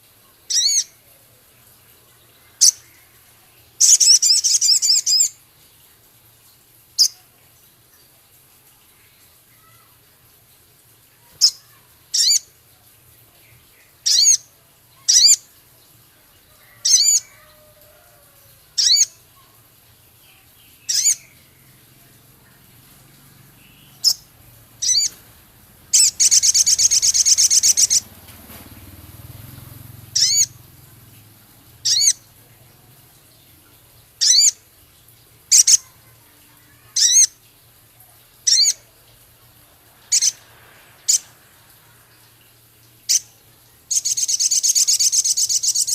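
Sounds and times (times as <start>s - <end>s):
harsh rapid bird chatter: 23.6s - 25.2s, 25.9s - 28.8s, 29.5s - 30.6s, 31.8s - 32.2s, 43.9s - 45.9s.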